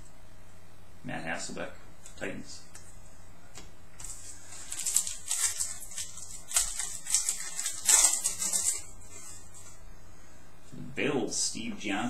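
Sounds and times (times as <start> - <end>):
card pack wrapper crinkling: 4.0 - 8.9.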